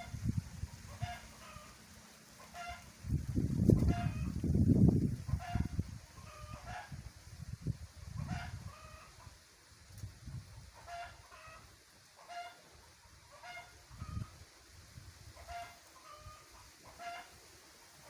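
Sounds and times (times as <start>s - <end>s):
wind rumbling on microphone: 0.0s - 1.3s, 2.6s - 11.1s, 13.8s - 16.7s
chickens clucking: 0.0s - 7.0s, 8.0s - 9.4s, 10.2s - 14.5s, 15.2s - 18.0s.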